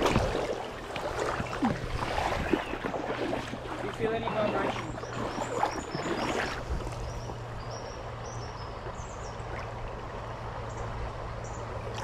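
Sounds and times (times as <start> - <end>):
creek flowing: 0.0 - 12.0.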